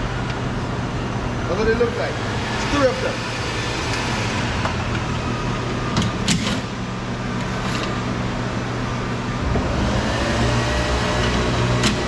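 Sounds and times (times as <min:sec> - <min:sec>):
background hum and rush: 0:00.0 - 0:12.0.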